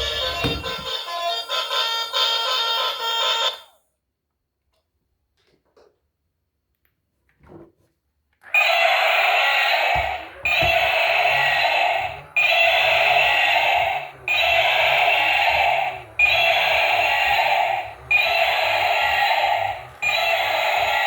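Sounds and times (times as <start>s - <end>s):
toy vehicle electronic buzzing effect: 8.5s - 21.0s.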